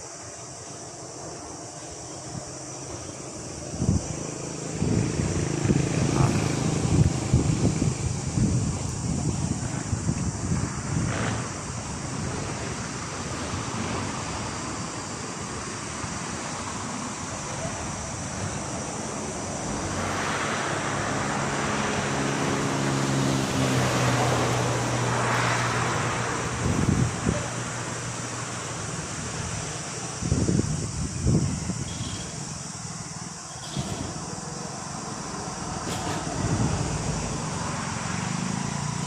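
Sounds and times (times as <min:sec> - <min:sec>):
high-pitched insect chorus: 0:00.0 - 0:39.0
vehicle passing by: 0:03.8 - 0:14.8, 0:16.4 - 0:30.6, 0:34.0 - 0:39.0.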